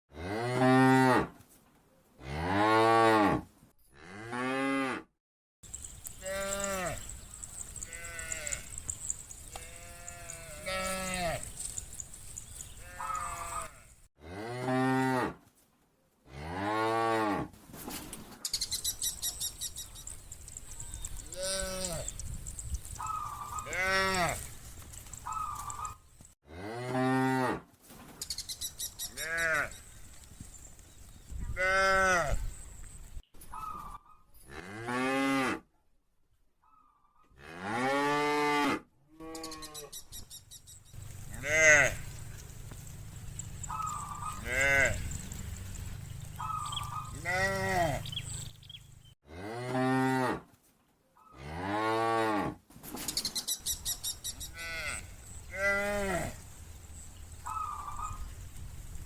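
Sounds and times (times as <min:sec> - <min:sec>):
cows mooing: 0:05.7 - 0:15.3, 0:21.0 - 0:24.6, 0:41.0 - 0:50.4.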